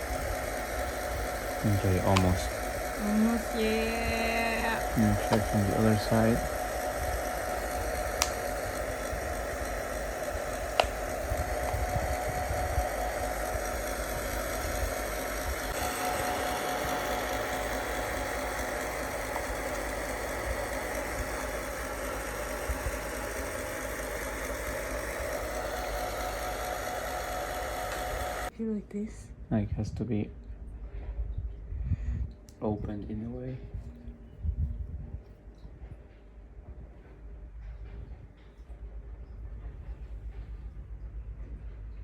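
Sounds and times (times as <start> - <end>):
hot-air blower running: 0.0 - 28.5.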